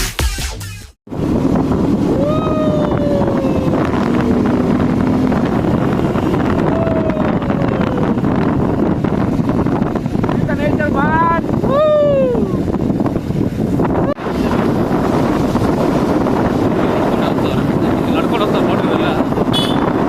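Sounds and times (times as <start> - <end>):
vehicle running noise: 1.1 - 20.0
wind buffeting microphone: 1.1 - 20.0
falling pitched tone: 1.6 - 8.8.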